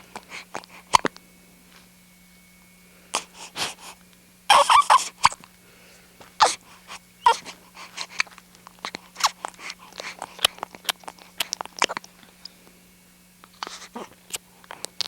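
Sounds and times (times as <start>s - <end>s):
girl hiccuping: 4.5s - 5.4s, 6.4s - 6.6s.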